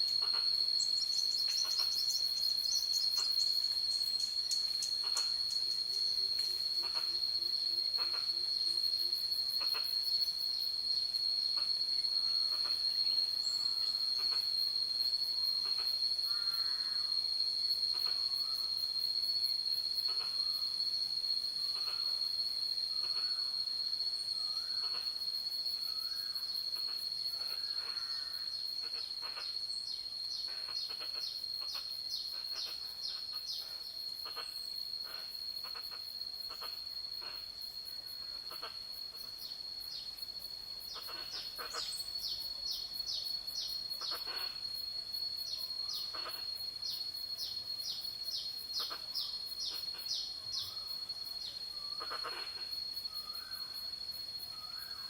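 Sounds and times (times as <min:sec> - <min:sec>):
high-pitched insect trill: 0:00.0 - 0:55.0.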